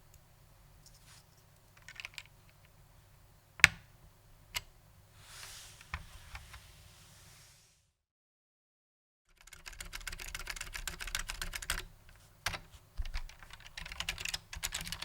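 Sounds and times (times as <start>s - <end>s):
soft rustle: 0.8s - 1.6s, 5.2s - 7.9s.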